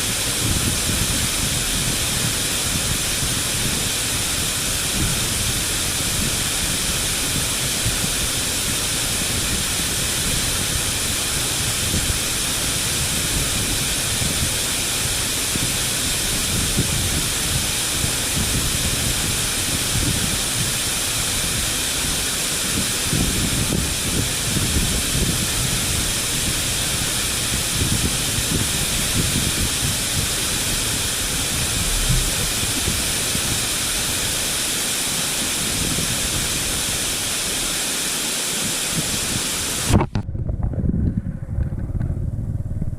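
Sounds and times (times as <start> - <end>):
waterfall rushing: 0.0 - 40.0
low uneven rumble: 40.0 - 42.9.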